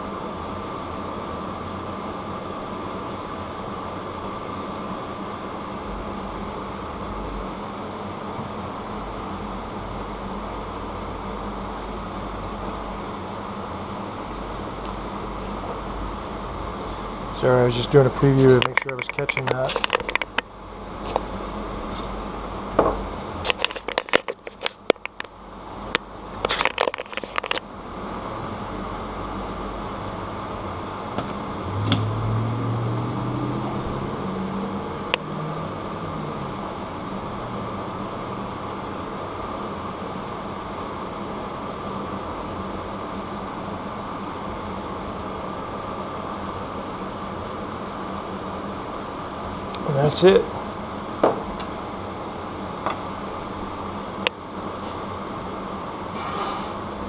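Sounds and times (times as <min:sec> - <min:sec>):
steady low hum: 0:00.0 - 0:57.0
rising creak: 0:31.6 - 0:35.4.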